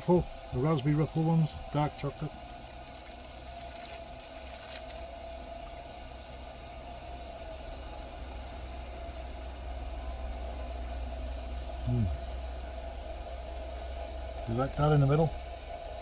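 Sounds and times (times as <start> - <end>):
low mechanical hum: 0.0 - 16.0
thin steady tone: 5.4 - 16.0.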